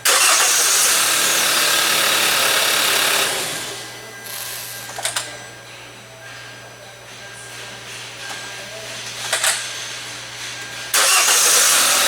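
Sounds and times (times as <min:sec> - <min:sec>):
car engine cranking on starter: 0:00.0 - 0:03.9, 0:10.9 - 0:12.0.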